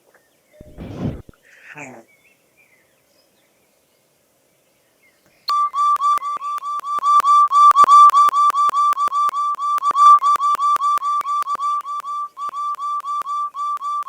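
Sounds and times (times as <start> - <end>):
high whistle-like beeps: 0.6 - 1.2, 5.5 - 14.0.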